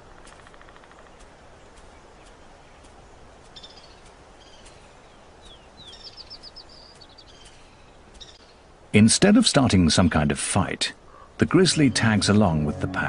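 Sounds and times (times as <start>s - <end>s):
steady outdoor hiss: 0.0s - 13.0s
small bird chirping: 0.2s - 8.6s.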